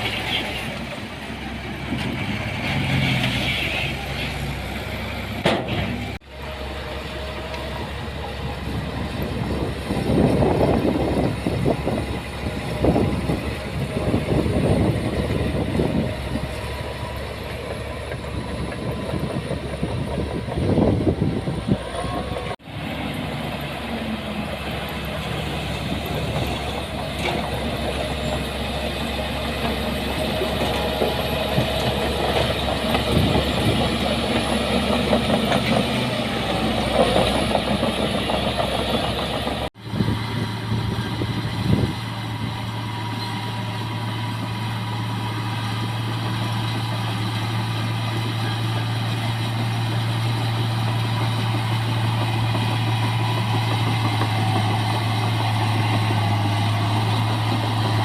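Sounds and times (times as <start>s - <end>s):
diesel engine of heavy machinery: 0.0s - 58.0s
machinery clatter: 23.1s - 40.1s, 40.7s - 58.0s.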